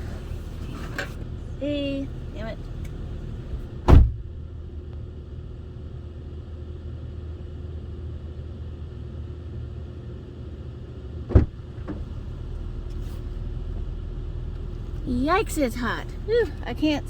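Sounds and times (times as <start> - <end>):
car engine idling: 0.0 - 17.0
sharp thump: 3.9 - 4.2.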